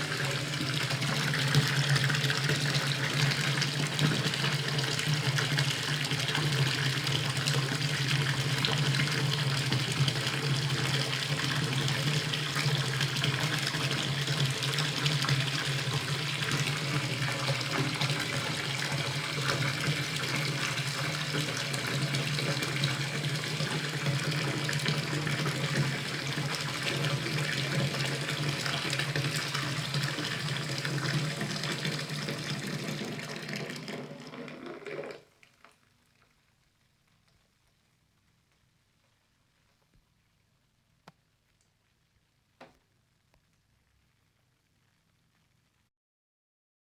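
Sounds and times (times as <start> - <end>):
tap water filling bathtub: 0.0 - 36.4.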